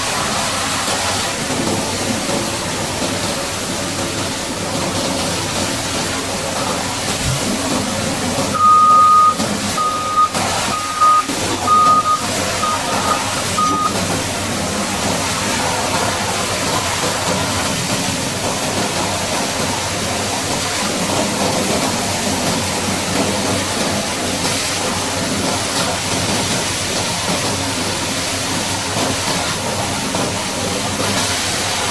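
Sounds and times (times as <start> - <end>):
backup alarm beeping: 8.6 - 14.1.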